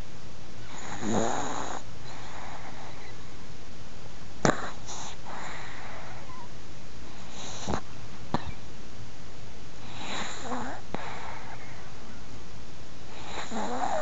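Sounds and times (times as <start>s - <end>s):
dog snoring: 0.6s - 3.3s, 4.4s - 6.5s, 7.1s - 8.6s, 9.8s - 12.0s, 13.1s - 14.0s.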